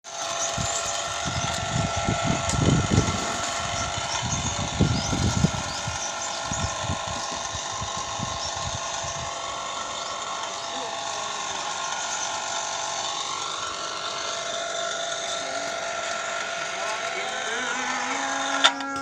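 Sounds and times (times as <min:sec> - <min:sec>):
material hoist motor whining: 0:00.0 - 0:19.0
low rumbling gusts: 0:01.1 - 0:09.4.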